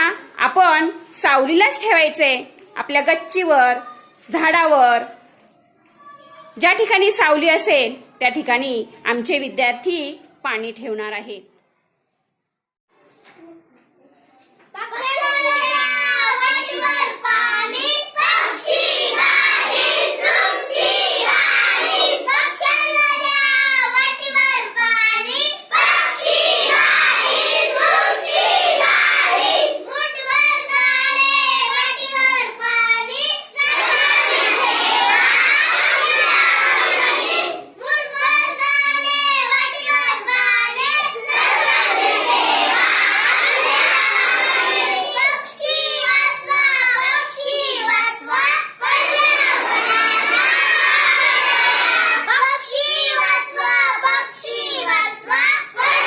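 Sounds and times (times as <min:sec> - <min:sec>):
children singing together: 0:15.0 - 0:32.6, 0:33.5 - 0:56.0.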